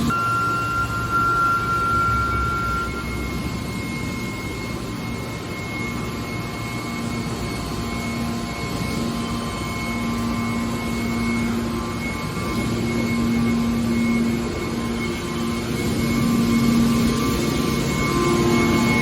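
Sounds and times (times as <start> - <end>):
low hum: 0.0 - 5.1
hydraulic baler running: 0.0 - 6.9.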